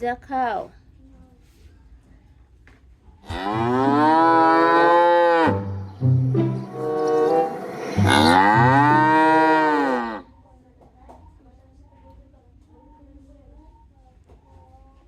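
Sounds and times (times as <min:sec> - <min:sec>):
cow mooing: 0:03.3 - 0:05.8, 0:06.7 - 0:10.2.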